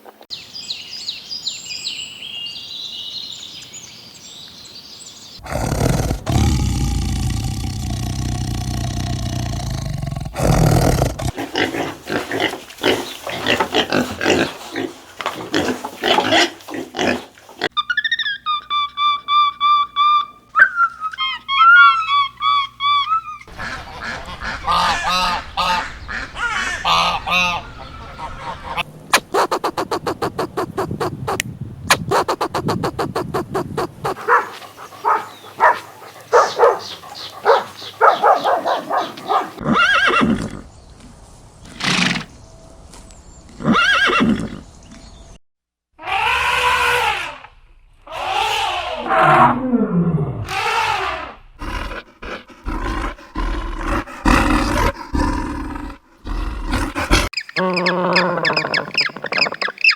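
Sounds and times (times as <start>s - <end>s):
animal calls: 5.4s - 14.8s, 17.1s - 31.4s, 32.0s - 40.6s, 46.0s - 49.7s, 50.4s - 59.9s.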